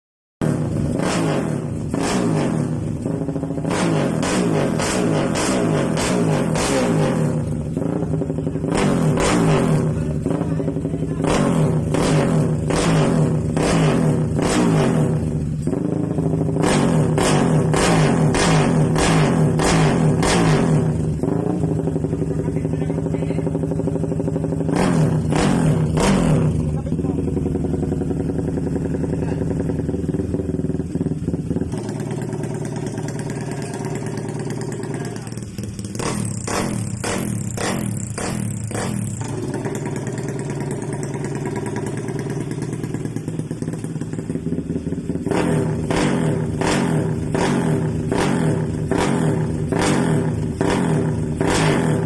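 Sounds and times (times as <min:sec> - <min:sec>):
motorcycle engine throttle blips: 0:00.5 - 0:52.0
motorcycle engine idling: 0:02.6 - 0:52.0.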